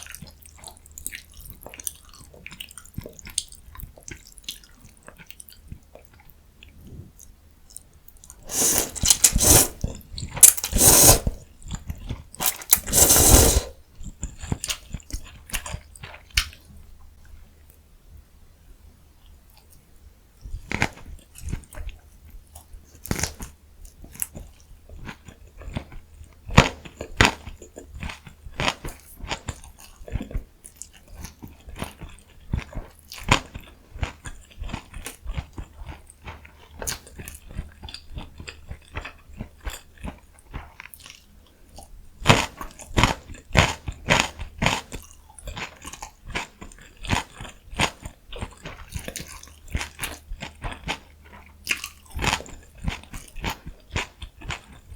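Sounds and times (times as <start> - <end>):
person chewing crunchy food: 8.3 - 13.8, 26.7 - 54.9
wet mouth clicks: 8.5 - 11.4, 12.5 - 13.7.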